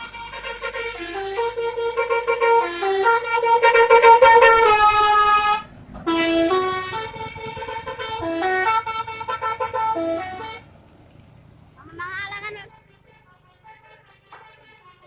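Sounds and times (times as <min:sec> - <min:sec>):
musical air horn tune: 0:00.0 - 0:10.7.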